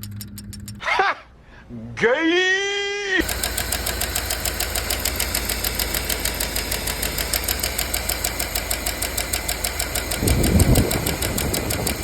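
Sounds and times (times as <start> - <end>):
engine idling with fast ticking: 3.2 - 12.0.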